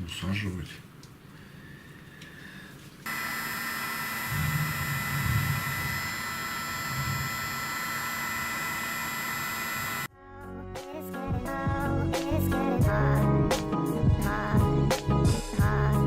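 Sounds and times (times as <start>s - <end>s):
hot-air gun blowing with whine: 3.0s - 10.1s.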